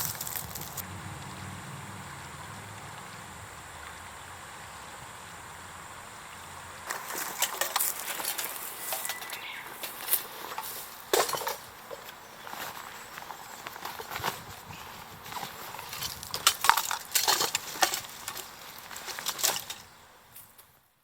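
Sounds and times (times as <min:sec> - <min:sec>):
hard objects clinking and knocking: 0:06.9 - 0:12.1, 0:15.3 - 0:19.9.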